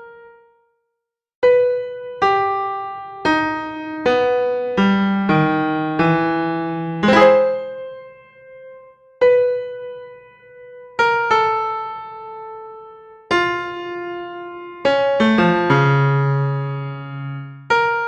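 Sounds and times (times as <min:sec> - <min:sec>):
piano-like keyboard notes and chords: 0:07.1 - 0:08.0.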